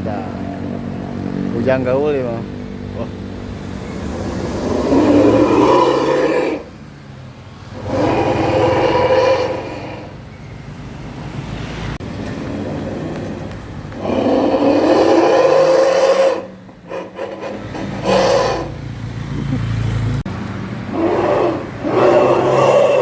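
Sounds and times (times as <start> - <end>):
exhaust sputters: 0.0 - 6.8, 12.0 - 23.0
car engine revving: 0.0 - 23.0.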